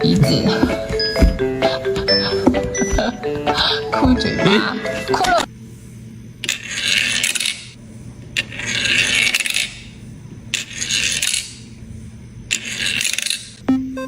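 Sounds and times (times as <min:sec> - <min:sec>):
steady low hum: 0:00.0 - 0:14.0
hissing rattling scrape: 0:06.4 - 0:07.7, 0:08.4 - 0:13.5.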